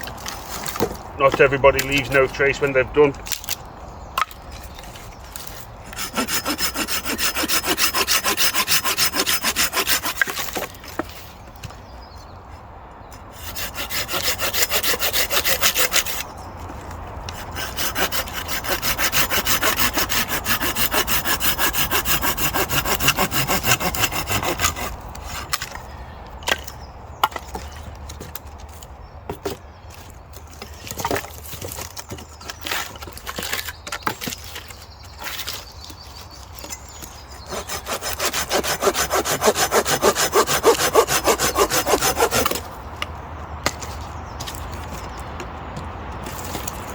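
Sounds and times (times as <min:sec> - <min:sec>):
hand saw cutting wood: 0:05.4 - 0:11.1, 0:13.3 - 0:16.3, 0:17.3 - 0:25.8, 0:36.6 - 0:42.7.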